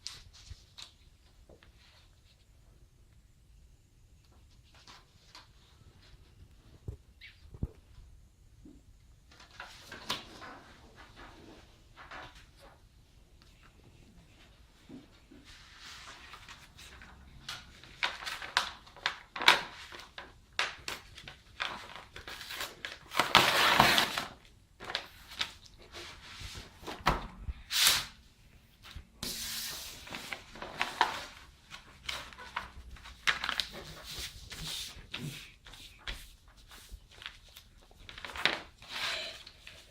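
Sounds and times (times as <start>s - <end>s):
rustling noise: 25.0s - 39.9s.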